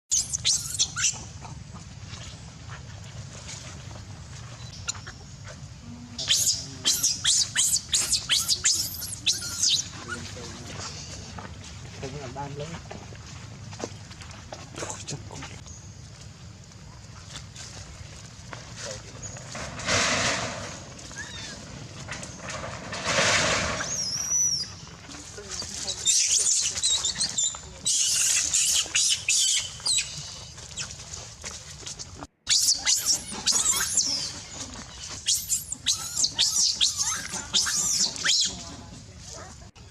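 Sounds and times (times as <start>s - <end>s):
monkey screaming: 0.1s - 1.5s, 6.2s - 10.2s, 21.0s - 21.7s, 26.0s - 30.9s, 32.5s - 38.6s.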